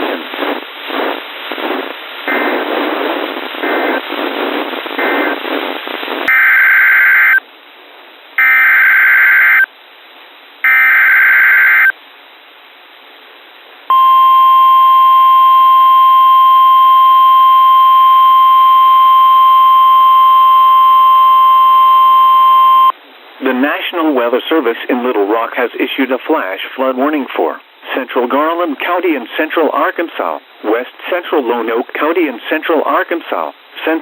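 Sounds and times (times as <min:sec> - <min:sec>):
radio static hiss: 0:00.0 - 0:07.5, 0:13.9 - 0:34.0
buzzy digital data bursts: 0:00.4 - 0:07.4
steady alarm tone: 0:06.3 - 0:07.4, 0:08.4 - 0:09.7, 0:10.6 - 0:11.9, 0:13.9 - 0:22.9.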